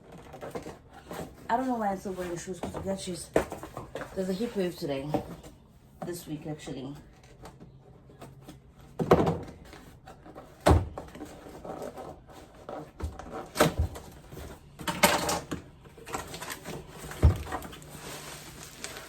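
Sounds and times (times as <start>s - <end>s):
packaging rustling: 11.2s - 19.0s.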